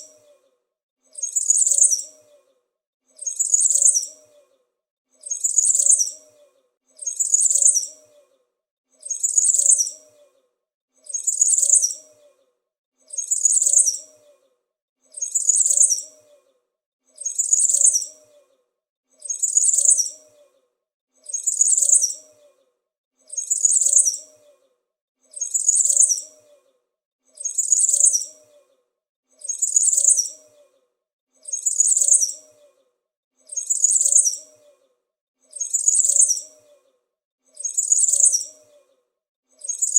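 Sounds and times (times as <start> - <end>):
small bird chirping: 0.0 - 0.5, 1.1 - 4.6, 5.2 - 8.4, 9.0 - 10.4, 11.0 - 12.5, 13.1 - 14.5, 15.1 - 18.6, 19.2 - 20.6, 21.2 - 22.6, 23.2 - 24.7, 25.3 - 28.8, 29.4 - 32.8, 33.4 - 39.0, 39.6 - 39.9.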